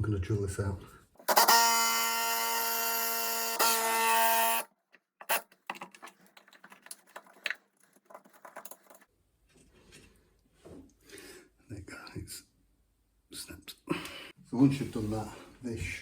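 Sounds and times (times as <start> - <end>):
power drill whining: 1.2 - 5.4.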